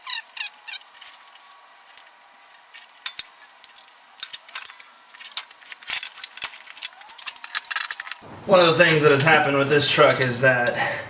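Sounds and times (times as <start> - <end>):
metal tools and bolts clinking: 3.0 - 8.2.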